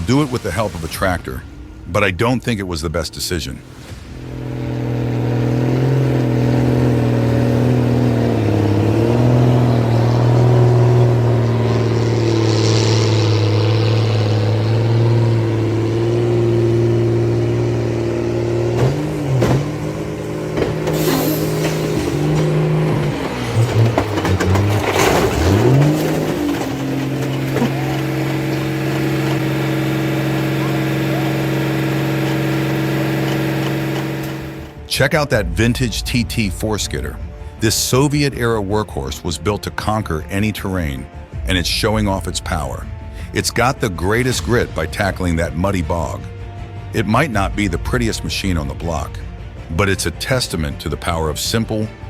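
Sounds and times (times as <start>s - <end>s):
engines running under load: 0.0s - 52.0s
engine knocks: 3.8s - 38.1s.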